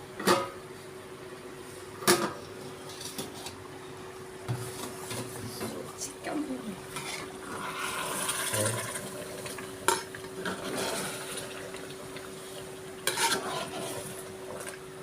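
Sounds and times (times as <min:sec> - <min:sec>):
spoon stirring in pot: 0:13.0 - 0:14.2.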